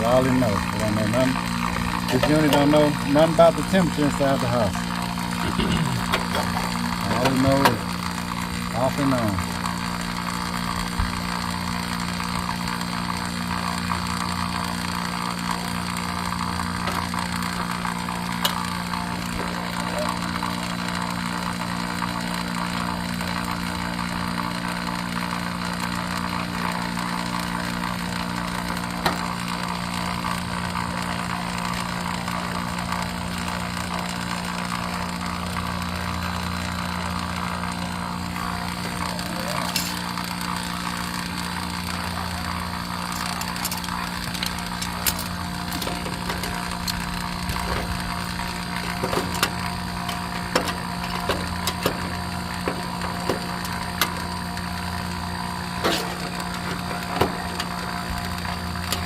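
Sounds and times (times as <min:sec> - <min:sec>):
vacuum pump motor drone: 0:00.0 - 0:59.0.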